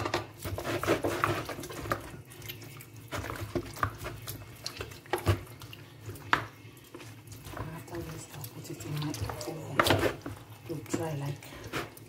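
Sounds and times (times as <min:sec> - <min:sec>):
hands squishing raw chicken: 0:00.0 - 0:12.0.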